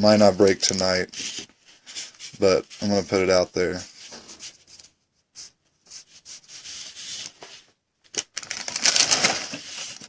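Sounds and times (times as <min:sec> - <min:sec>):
foil wrapper tearing and crinkling: 0:08.1 - 0:10.0.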